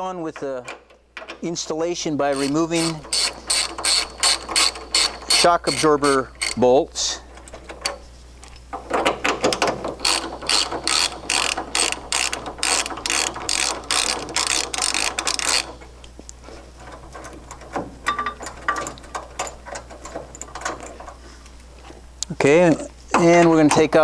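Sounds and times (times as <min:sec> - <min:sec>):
ratchet wrench clicking: 0:02.3 - 0:06.6, 0:10.0 - 0:15.8.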